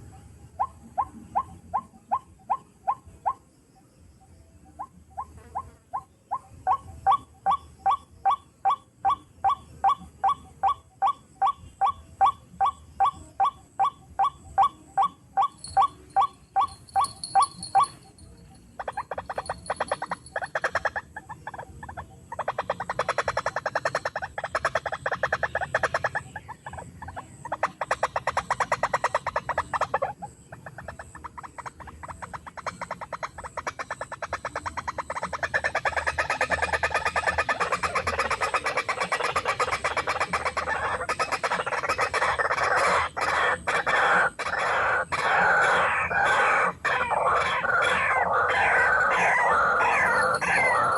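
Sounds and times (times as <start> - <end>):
waterhen calls: 6.7 - 18.0, 18.8 - 50.9.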